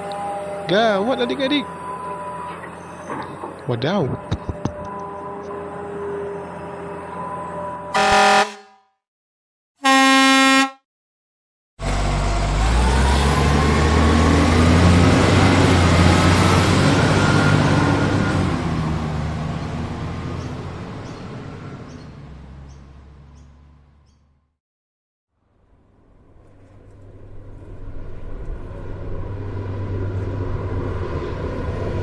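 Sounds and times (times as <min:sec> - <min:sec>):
vehicle engine whining: 0:00.0 - 0:08.5, 0:11.8 - 0:24.4, 0:25.6 - 0:32.0
truck horn honks: 0:07.9 - 0:09.0, 0:09.8 - 0:10.8.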